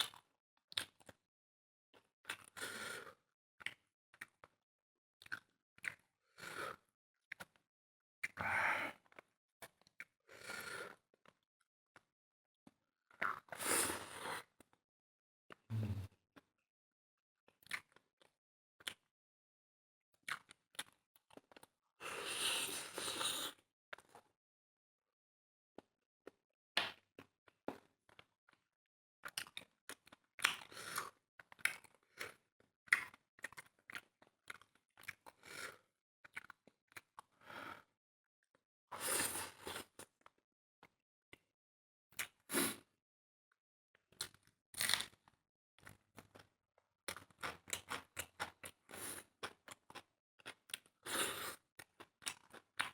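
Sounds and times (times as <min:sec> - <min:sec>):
person chewing and crunching food: 0:05.2 - 0:06.1, 0:13.1 - 0:13.6, 0:20.2 - 0:24.3, 0:29.2 - 0:37.4, 0:44.2 - 0:46.5, 0:47.1 - 0:52.9.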